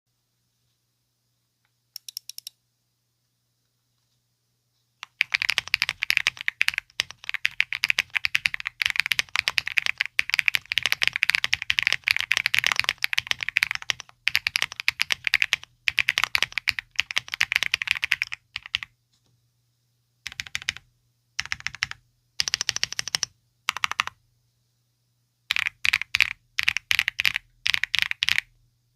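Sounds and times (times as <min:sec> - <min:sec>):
mechanical keyboard typing: 0:02.0 - 0:02.5, 0:05.0 - 0:18.9, 0:20.3 - 0:20.8, 0:21.4 - 0:24.2, 0:25.5 - 0:28.5.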